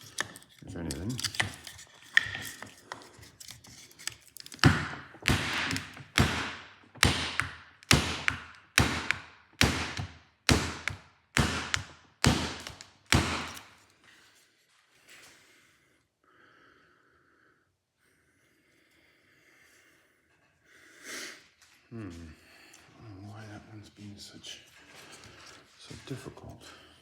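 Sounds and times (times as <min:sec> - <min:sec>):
hammer striking wooden block: 0:04.6 - 0:13.7.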